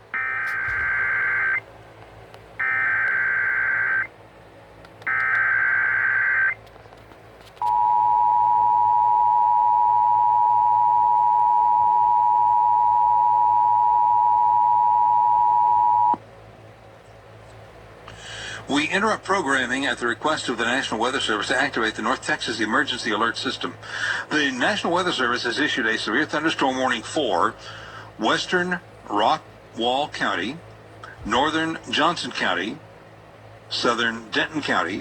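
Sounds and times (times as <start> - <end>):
two-tone attention signal: 0.2 - 1.6, 2.6 - 4.1, 7.6 - 16.2
warbling data screech: 0.2 - 1.6, 2.6 - 4.1, 5.1 - 6.6.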